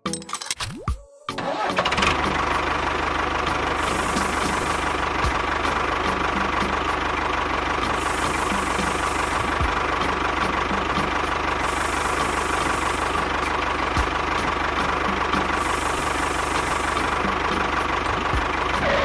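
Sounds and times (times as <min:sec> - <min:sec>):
small engine running: 0:01.4 - 0:19.0
thin steady whine: 0:07.9 - 0:09.7.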